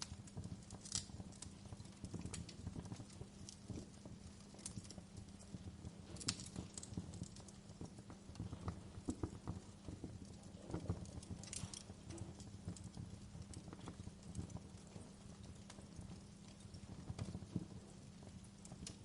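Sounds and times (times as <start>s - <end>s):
campfire crackling and popping: 0.0s - 19.0s.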